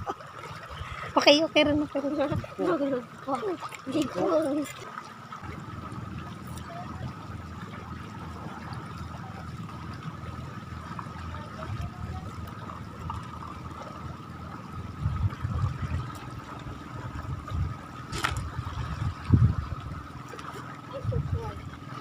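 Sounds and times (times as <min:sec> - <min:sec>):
seawater washing at shoreline: 0:00.0 - 0:22.0
low rumbles: 0:05.4 - 0:22.0.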